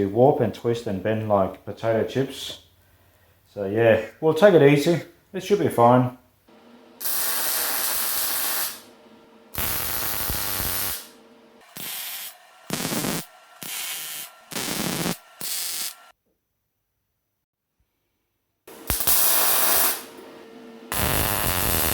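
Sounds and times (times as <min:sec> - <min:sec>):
arc welding crackling hiss: 0:07.0 - 0:16.1, 0:18.7 - 0:20.2, 0:20.9 - 0:21.9.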